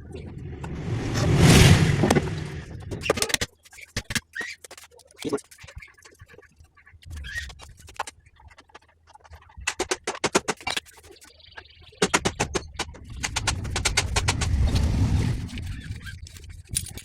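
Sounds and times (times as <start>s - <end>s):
low rumble: 0.0s - 3.0s, 13.1s - 15.9s.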